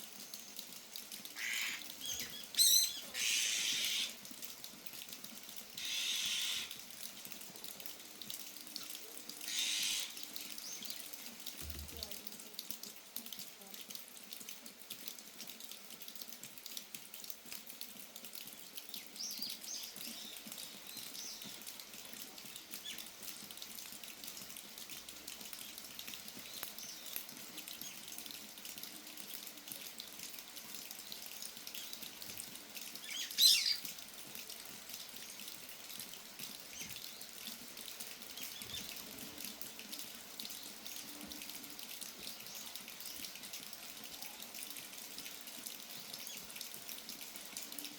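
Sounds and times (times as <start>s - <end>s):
rain falling and dripping: 0.0s - 47.9s
birds calling: 1.4s - 4.2s, 5.8s - 6.8s, 9.4s - 10.9s, 33.1s - 33.8s.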